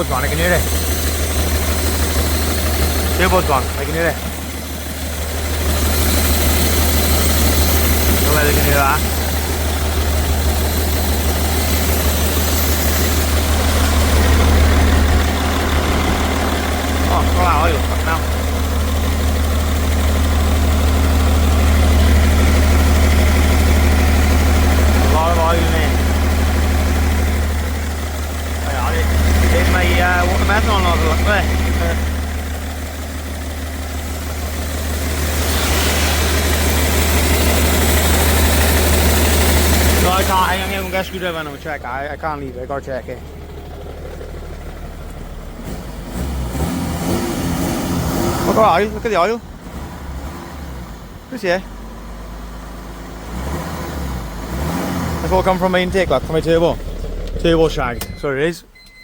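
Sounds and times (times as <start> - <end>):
diesel engine idling: 0.0 - 59.0
turbo hiss: 34.8 - 40.1.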